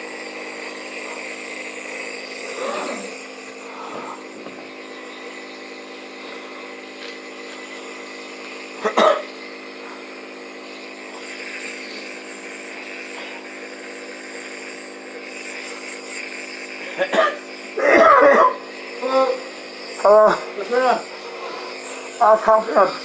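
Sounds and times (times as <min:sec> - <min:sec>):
steady droning hum: 0:02.0 - 0:05.6, 0:06.2 - 0:23.0
man coughing: 0:02.5 - 0:03.2, 0:08.8 - 0:09.4, 0:16.8 - 0:19.5, 0:20.1 - 0:21.1.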